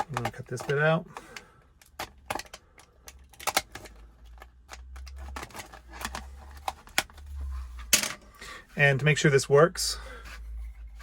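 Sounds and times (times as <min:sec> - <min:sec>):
knife cutting plastic case: 0:00.0 - 0:02.6.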